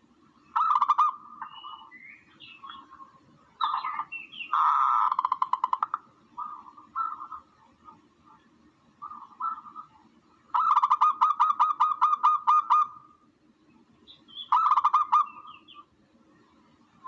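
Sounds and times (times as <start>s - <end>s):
harsh repeated bird calls: 0.4s - 13.2s, 14.1s - 15.9s.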